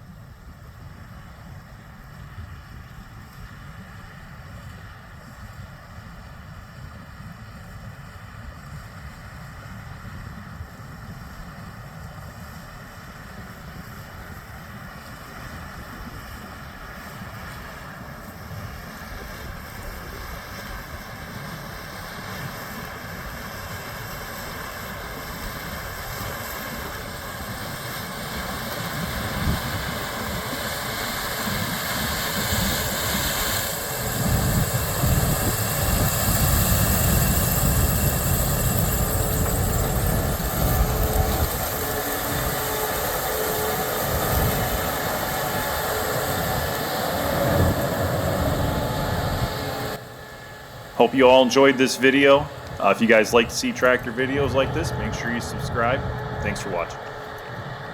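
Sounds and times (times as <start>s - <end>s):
high steady whine: 31.5s - 57.9s
low engine rumble: 34.1s - 57.9s.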